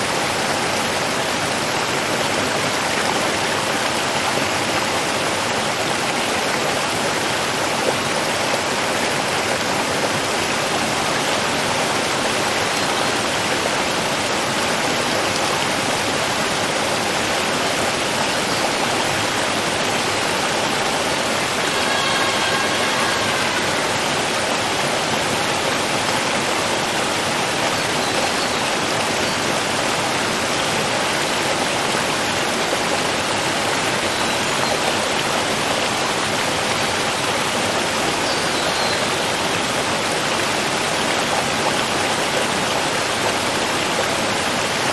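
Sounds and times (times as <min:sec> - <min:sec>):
water rushing: 0:00.0 - 0:44.9.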